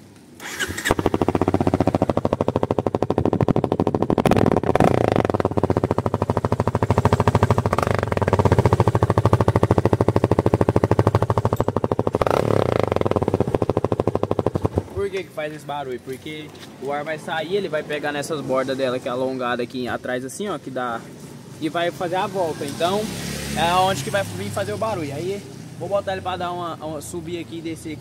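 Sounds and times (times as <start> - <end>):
motorcycle engine revving: 0.0 - 15.1, 22.0 - 26.3.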